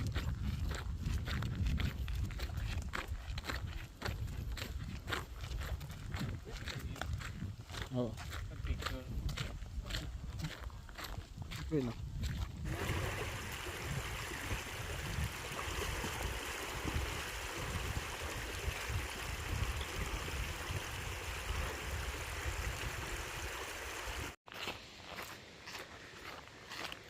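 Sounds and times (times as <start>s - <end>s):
stream water rushing: 12.7s - 24.4s.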